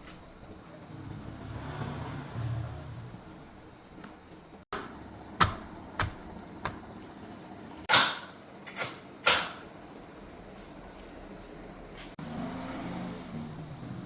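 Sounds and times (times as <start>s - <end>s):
sharp knocks: 4.7s - 6.9s.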